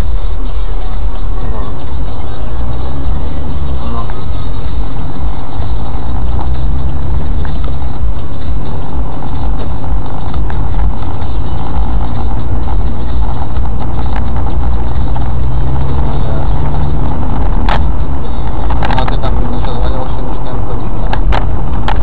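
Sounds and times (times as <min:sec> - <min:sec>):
car engine and road rumble: 0:00.0 - 0:22.0.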